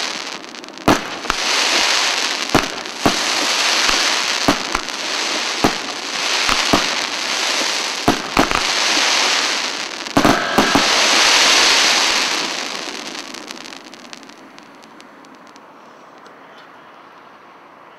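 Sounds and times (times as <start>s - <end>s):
fireworks bangs: 0.0s - 16.2s
high-pitched fireworks crackling: 0.0s - 16.4s.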